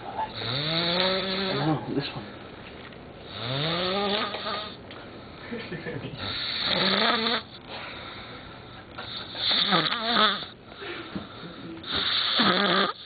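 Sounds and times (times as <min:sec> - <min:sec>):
man snoring loudly: 0:00.4 - 0:01.6, 0:03.3 - 0:04.8, 0:06.2 - 0:07.5, 0:09.4 - 0:10.5, 0:11.9 - 0:13.0
quiet breathing: 0:07.6 - 0:09.6.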